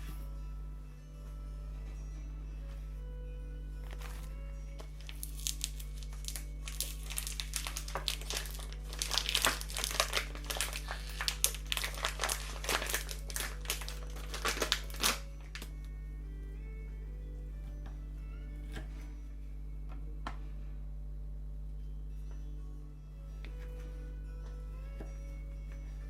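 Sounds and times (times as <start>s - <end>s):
faint background music: 0.0s - 26.0s
crinkling and crackling: 3.8s - 15.9s.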